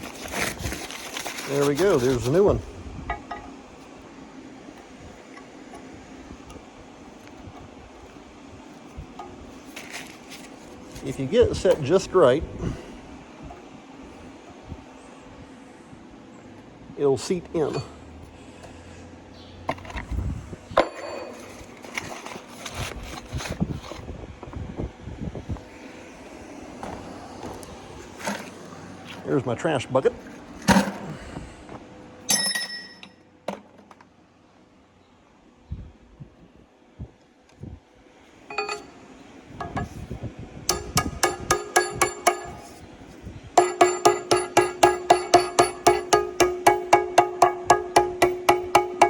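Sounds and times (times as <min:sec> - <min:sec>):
metal parts knocking and clinking: 0:03.1 - 0:03.6, 0:32.3 - 0:33.2, 0:38.5 - 0:39.0, 0:39.6 - 0:40.1, 0:40.7 - 0:42.8, 0:43.6 - 0:49.0
ringing metal clank: 0:17.7 - 0:18.0, 0:32.3 - 0:33.2, 0:38.5 - 0:39.0, 0:40.7 - 0:42.8, 0:43.6 - 0:49.0
hammer blows on steel: 0:40.7 - 0:42.8, 0:43.6 - 0:49.0.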